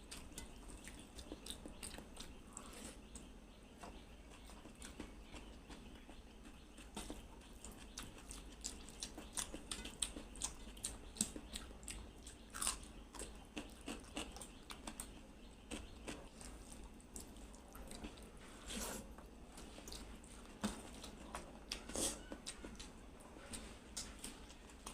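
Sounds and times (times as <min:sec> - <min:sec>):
person chewing and biting food: 0:07.6 - 0:15.1.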